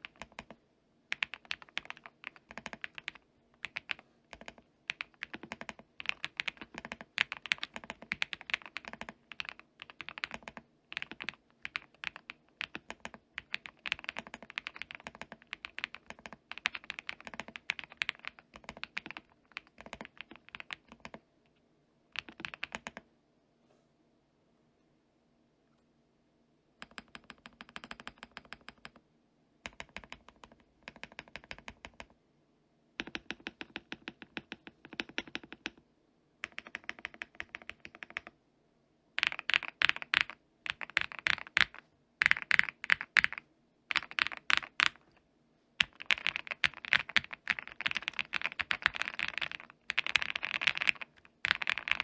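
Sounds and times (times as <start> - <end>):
fast typing on mechanical keyboard: 0.0 - 21.2, 22.2 - 23.0, 26.8 - 29.0, 29.6 - 32.1, 33.0 - 35.8, 36.4 - 38.3, 39.2 - 45.1, 45.8 - 52.0.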